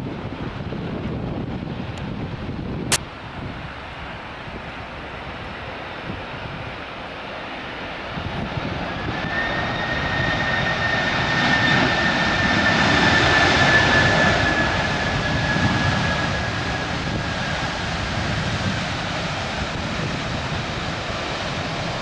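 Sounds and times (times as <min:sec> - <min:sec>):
airliner engines passing: 0:00.0 - 0:22.0.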